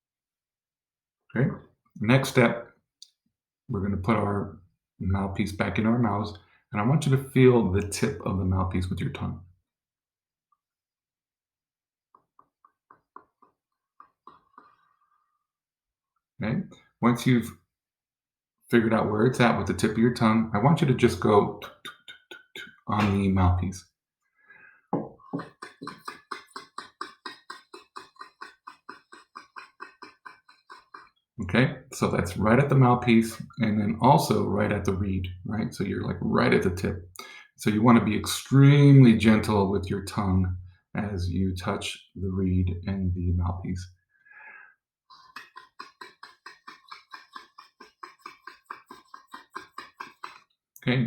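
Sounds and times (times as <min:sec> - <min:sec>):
tongue tapping clarinet reed: 0:25.3 - 0:31.1.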